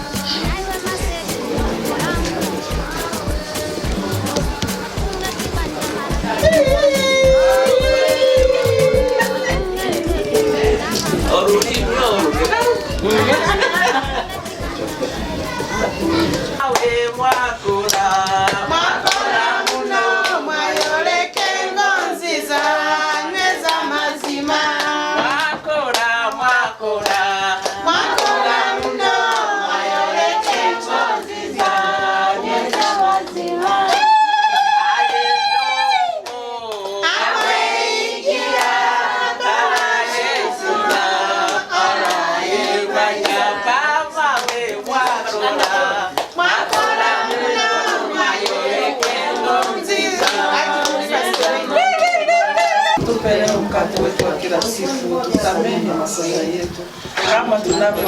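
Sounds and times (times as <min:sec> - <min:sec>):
hand clapping: 0:00.0 - 0:32.0, 0:32.6 - 0:35.2, 0:44.3 - 0:57.4
group singing: 0:00.0 - 0:58.0
voice holding a high note: 0:06.2 - 0:10.8.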